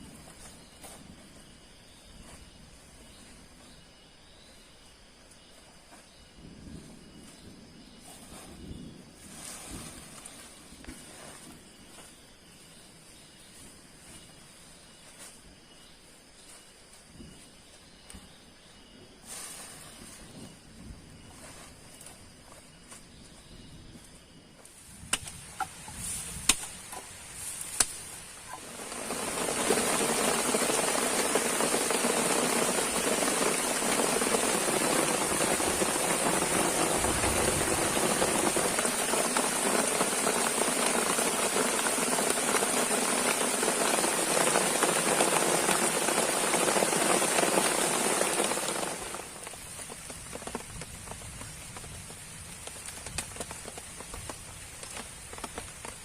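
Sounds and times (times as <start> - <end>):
heavy rain pouring: 28.6 - 56.0.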